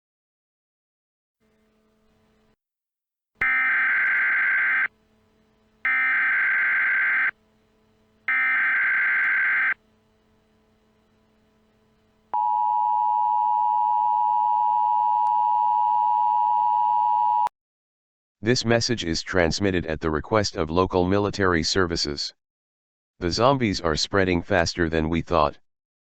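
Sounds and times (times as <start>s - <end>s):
two-tone attention signal: 3.4s - 4.9s, 5.9s - 7.4s, 8.3s - 9.8s
buzzy data tone bursts: 3.4s - 12.4s.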